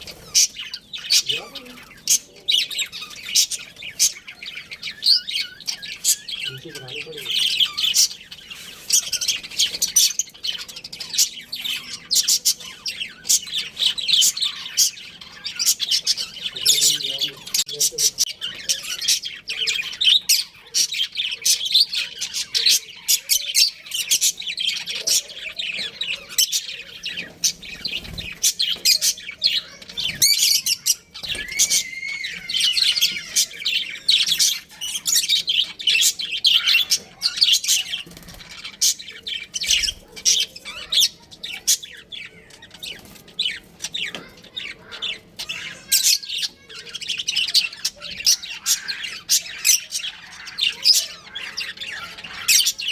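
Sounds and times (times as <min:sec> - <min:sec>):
budgerigars chirping: 0:00.0 - 0:52.9.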